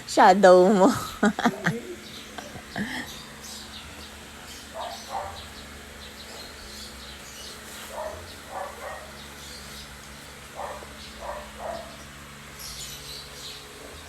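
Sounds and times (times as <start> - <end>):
steady low hum: 0.0 - 14.0
dog barking faintly: 4.8 - 5.5, 7.8 - 9.2, 10.6 - 12.0.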